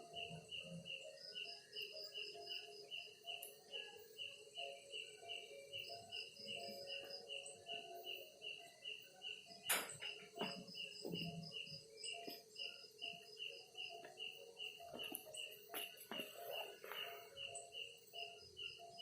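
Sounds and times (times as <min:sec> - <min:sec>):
crickets chirping: 0:00.0 - 0:19.0
low continuous chirring: 0:00.0 - 0:19.0.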